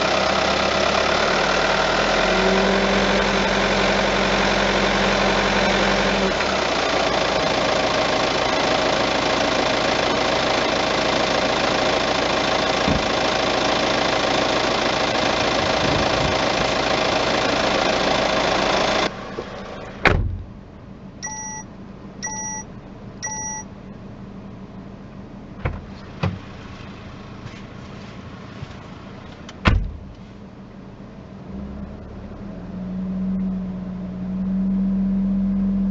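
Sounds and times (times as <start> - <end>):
car engine running: 0.0 - 35.9
short electronic beeps: 21.2 - 23.7.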